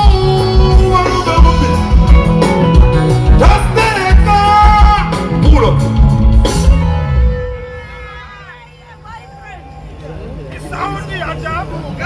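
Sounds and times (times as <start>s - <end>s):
loud music with bass beat: 0.0s - 7.3s
person singing: 3.4s - 5.8s.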